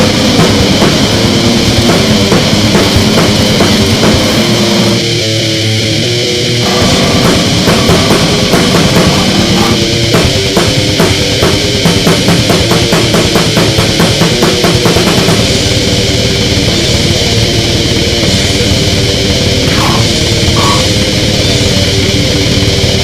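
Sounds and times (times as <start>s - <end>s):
fast drum hits: 0.0s - 5.0s, 6.6s - 15.8s, 19.7s - 21.0s
distorted guitars and bass: 0.0s - 23.0s.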